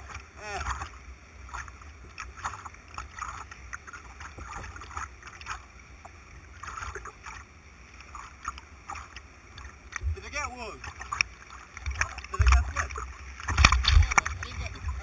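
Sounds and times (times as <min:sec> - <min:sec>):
paddle strokes: 0:00.0 - 0:15.0
water splashing around kayak: 0:00.0 - 0:15.0
steady low rumble: 0:11.9 - 0:15.0.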